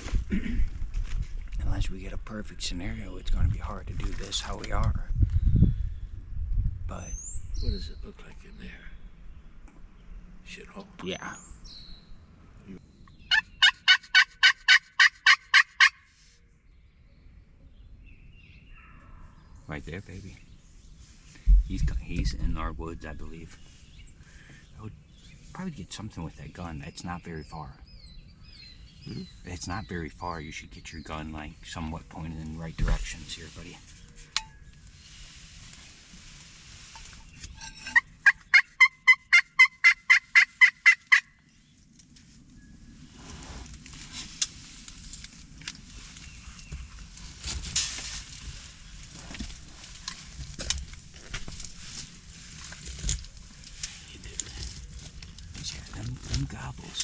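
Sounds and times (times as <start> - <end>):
raspy turkey call yelps: 13.3 - 16.1, 37.9 - 41.4.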